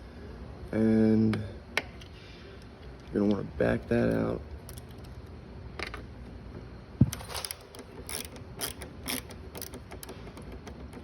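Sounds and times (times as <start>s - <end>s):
screwdriver ratchet clicks: 7.4s - 11.0s.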